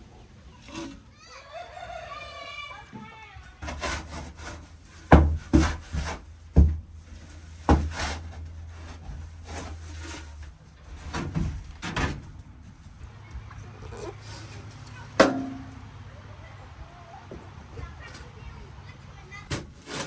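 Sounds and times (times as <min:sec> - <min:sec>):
shovel scraping and knocking: 0:03.6 - 0:12.2, 0:19.4 - 0:20.0.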